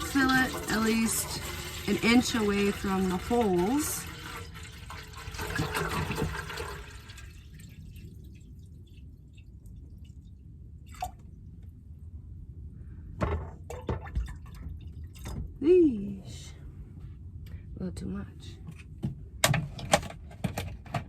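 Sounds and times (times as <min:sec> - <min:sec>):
water running into a pot: 0:00.0 - 0:08.5
low hum: 0:07.6 - 0:19.4.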